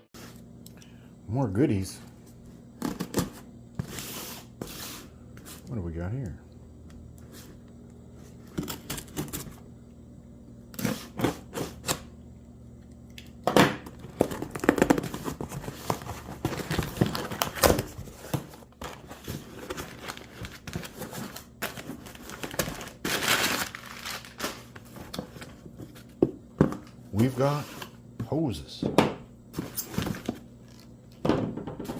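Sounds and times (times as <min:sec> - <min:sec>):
packaging crinkling and rustling: 0:13.9 - 0:26.1.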